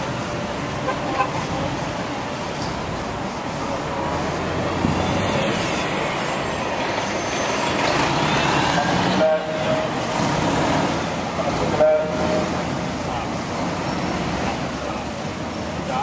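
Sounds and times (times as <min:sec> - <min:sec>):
city noise rumble: 0:00.0 - 0:16.0
faint gliding high squeals: 0:07.0 - 0:07.6.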